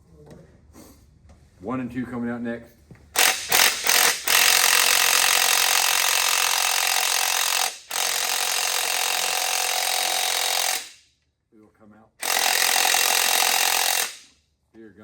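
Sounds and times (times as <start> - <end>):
impact gun running: 3.0 - 11.0, 12.2 - 14.3.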